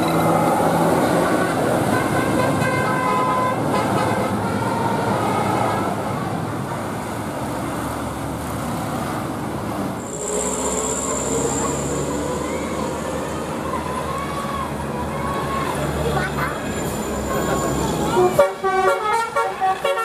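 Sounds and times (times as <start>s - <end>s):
road and engine noise: 0.0s - 20.0s
bus horn tooting pitched notes: 1.1s - 5.9s, 16.8s - 20.0s.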